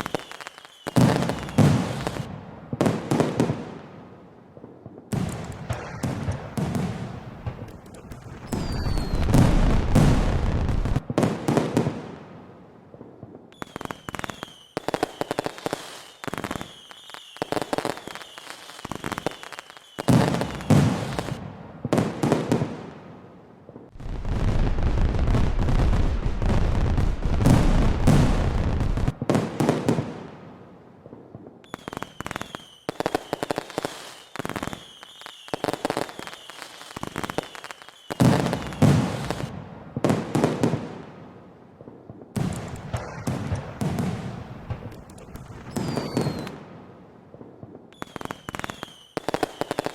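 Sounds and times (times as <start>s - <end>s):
fireworks crackling and banging: 0.0s - 49.9s
low rumble of booms: 5.6s - 11.0s.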